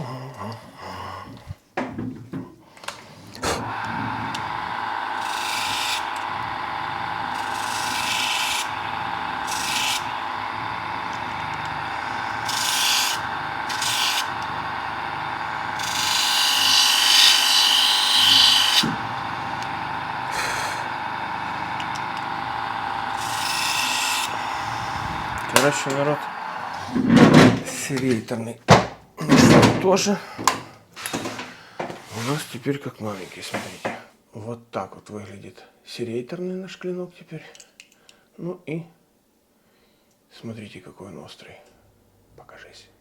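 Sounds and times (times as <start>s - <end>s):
rotary tool grinding metal: 3.4s - 27.8s.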